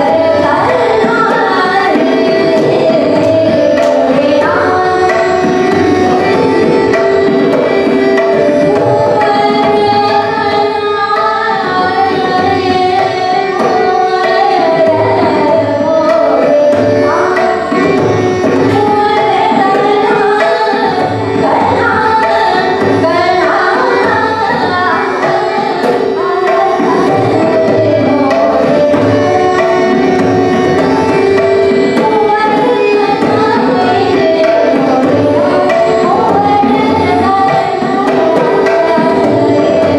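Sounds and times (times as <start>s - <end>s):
woman singing classical vocals: 0.0s - 5.3s, 18.7s - 28.7s.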